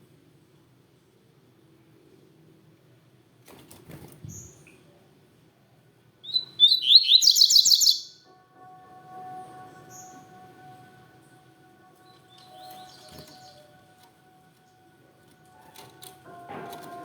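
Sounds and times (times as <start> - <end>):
bird singing rapid high notes: 6.2 - 8.2, 9.1 - 15.0
short high bird chirp: 6.3 - 8.1
faint steady tone: 8.1 - 17.0.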